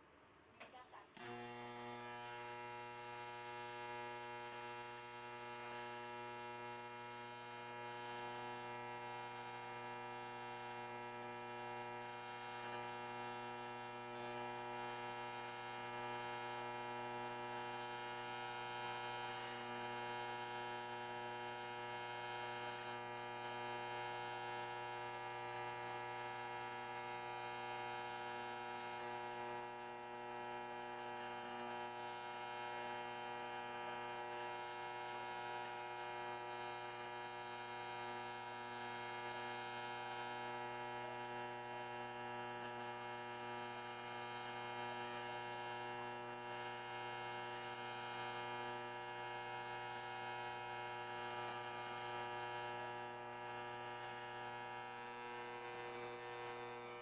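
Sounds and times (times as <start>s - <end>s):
electric motor humming: 1.2s - 5.3s.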